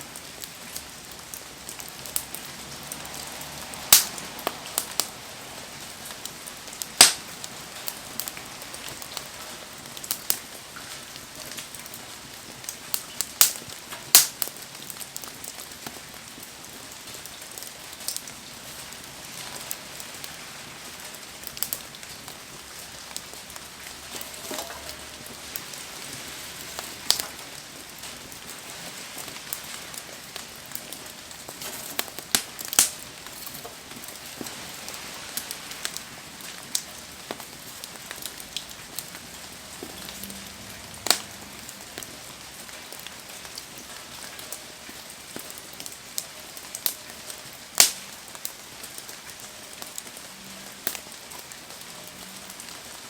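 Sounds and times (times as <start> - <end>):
fire crackling: 0.0 - 53.0
rain hissing: 0.0 - 53.0
sharp pops from fire: 3.8 - 5.1, 6.2 - 9.3, 12.6 - 16.0, 26.6 - 27.4, 29.2 - 34.6, 41.0 - 41.4, 47.7 - 48.6.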